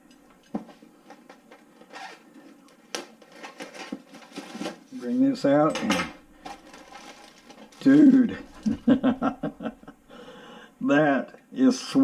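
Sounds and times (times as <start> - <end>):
packaging scraping and rustling: 1.0 - 5.7, 6.4 - 8.9.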